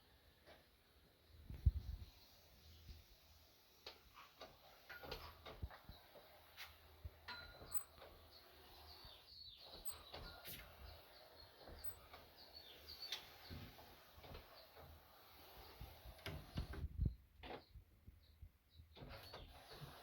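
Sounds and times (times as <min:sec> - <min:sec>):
faint bird chirping: 0:05.6 - 0:20.0.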